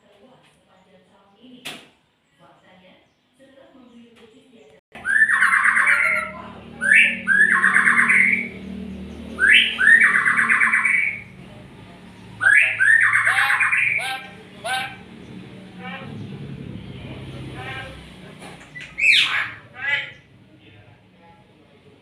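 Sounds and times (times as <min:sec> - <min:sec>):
songbird singing with buzzy trill: 0:05.0 - 0:11.4, 0:12.3 - 0:14.9.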